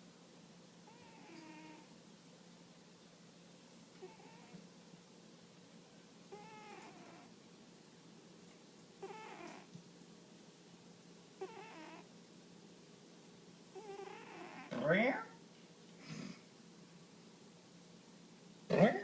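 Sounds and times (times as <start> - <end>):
cat snoring: 0.9 - 1.9, 4.0 - 4.5, 6.3 - 7.3, 9.0 - 9.7, 11.4 - 12.1, 13.7 - 14.7.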